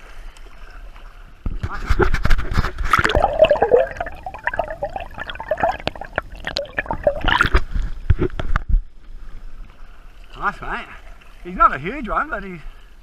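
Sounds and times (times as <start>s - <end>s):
water splashing and gurgling: 0.0s - 8.0s.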